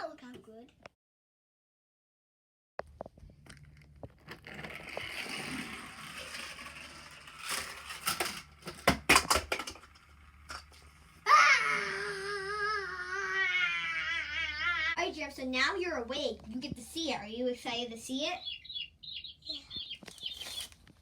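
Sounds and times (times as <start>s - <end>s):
sharp knocks and clatters: 8.0s - 10.8s
rustling handling noises: 20.0s - 21.0s.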